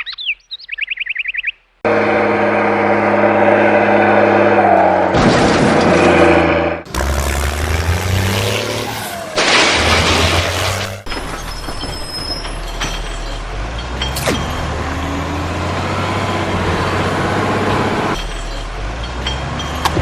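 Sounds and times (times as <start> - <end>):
heavy vehicle engine drone: 1.8 - 20.0
falling squeal: 8.5 - 17.2.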